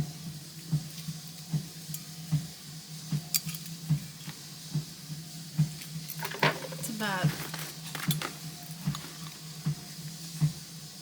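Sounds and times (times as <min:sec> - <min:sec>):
packaging rustling and crinkling: 0:06.2 - 0:09.6.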